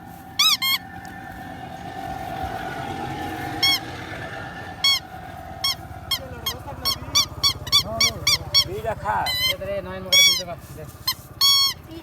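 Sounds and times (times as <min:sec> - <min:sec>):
short honking bird calls: 0:00.3 - 0:01.0, 0:04.8 - 0:12.0.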